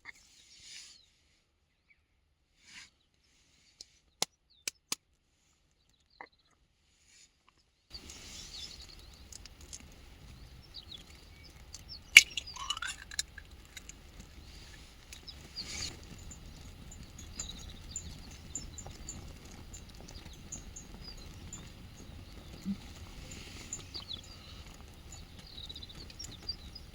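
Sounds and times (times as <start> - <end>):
small birds chirping: 7.9 - 26.9
brief rustle: 8.0 - 16.8.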